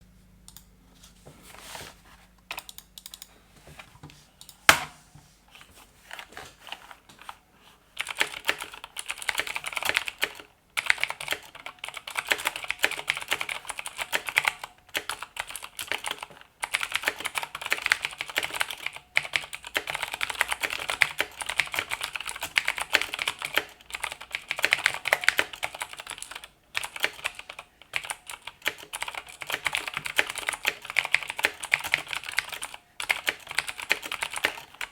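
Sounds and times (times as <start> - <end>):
clicky keyboard typing: 0.5 - 0.7, 2.5 - 3.4, 4.4 - 4.7, 8.0 - 34.9.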